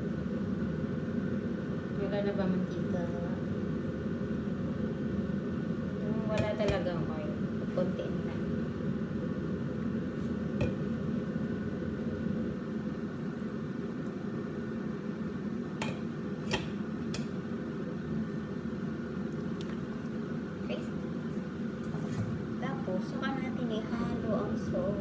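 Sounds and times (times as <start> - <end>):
kitchen cooking hum: 0.0 - 25.0
utensil clinking against cookware: 10.6 - 10.9, 15.8 - 17.4.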